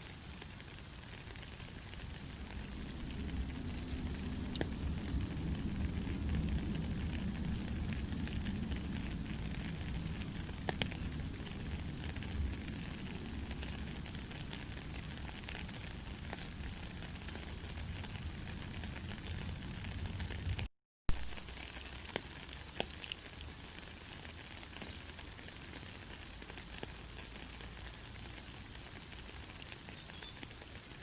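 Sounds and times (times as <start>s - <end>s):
faint crackles: 0.0s - 31.0s.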